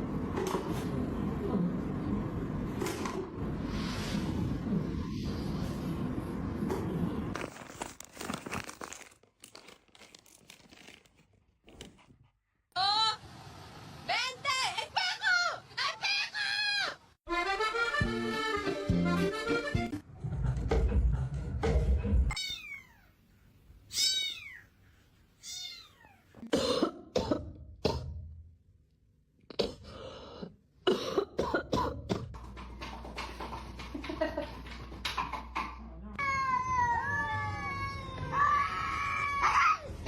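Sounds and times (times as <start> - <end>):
cat meowing: 23.9 - 24.7, 25.4 - 26.3
knocks and clatter: 32.1 - 35.9.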